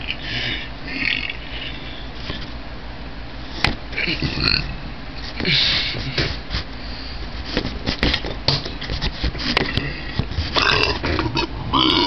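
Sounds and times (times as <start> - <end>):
person belching: 4.0 - 4.7, 10.6 - 12.0.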